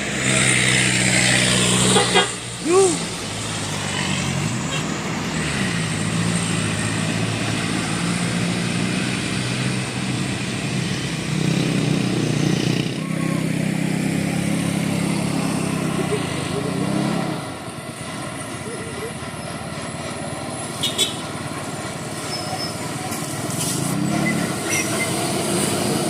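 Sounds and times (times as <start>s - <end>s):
heavy bus engine droning: 0.0s - 26.0s.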